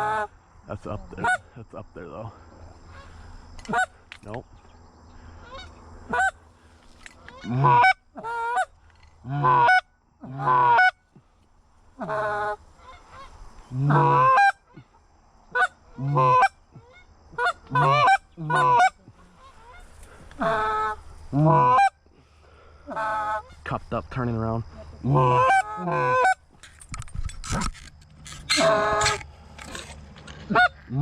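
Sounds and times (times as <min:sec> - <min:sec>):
goose honking: 0:00.0 - 0:00.3, 0:05.3 - 0:11.0, 0:12.0 - 0:14.9, 0:15.5 - 0:23.7, 0:25.0 - 0:26.4, 0:28.2 - 0:31.0.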